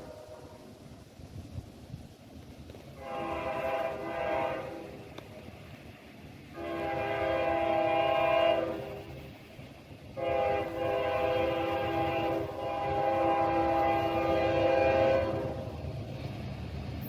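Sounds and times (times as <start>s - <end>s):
locomotive air horn blasts: 0.0s - 0.8s, 3.0s - 5.1s, 6.5s - 9.0s, 10.2s - 15.7s
low rumble of train: 0.0s - 17.0s.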